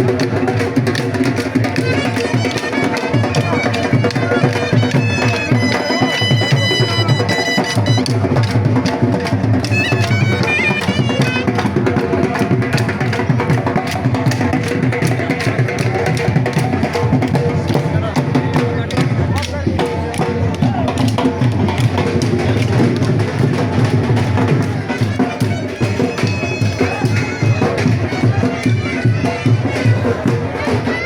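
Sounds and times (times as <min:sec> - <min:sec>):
fast dense drumming: 0:00.0 - 0:31.0
reedy wind instrument melody: 0:01.6 - 0:08.6, 0:09.6 - 0:11.9, 0:24.6 - 0:31.0.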